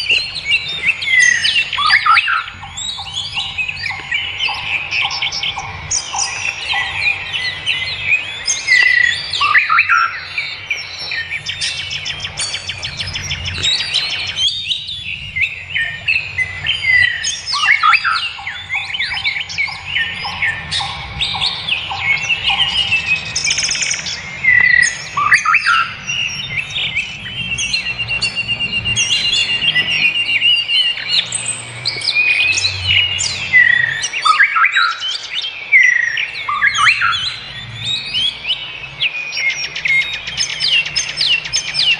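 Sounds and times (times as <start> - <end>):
fast even bird trill: 0.0 - 41.9
forest birds singing: 0.0 - 41.9.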